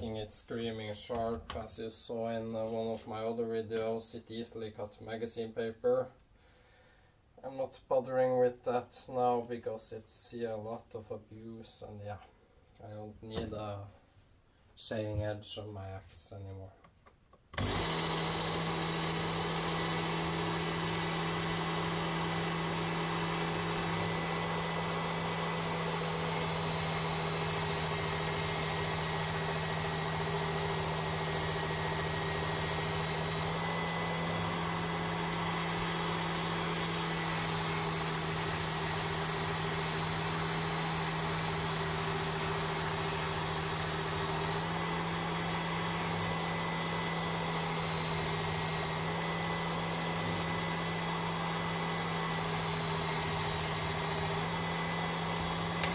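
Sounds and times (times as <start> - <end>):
belt sharpener motor running: 17.6 - 55.9
belt sharpener switching on: 17.6 - 55.9.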